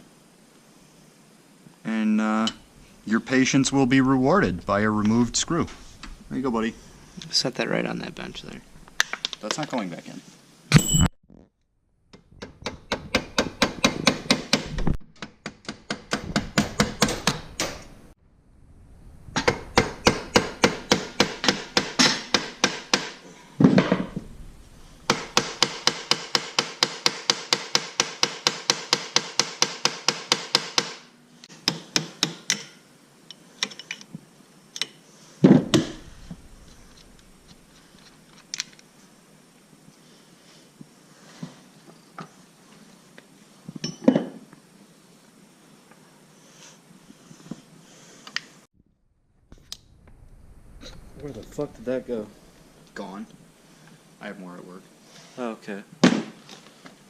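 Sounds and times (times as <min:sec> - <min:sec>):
hammer tapping chisel on metal: 0:19.4 - 0:23.2.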